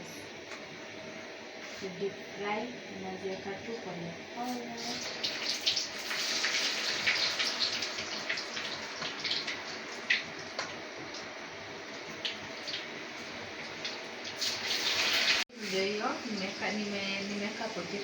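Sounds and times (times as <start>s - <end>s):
potatoes sizzling in hot oil: 4.4s - 18.0s.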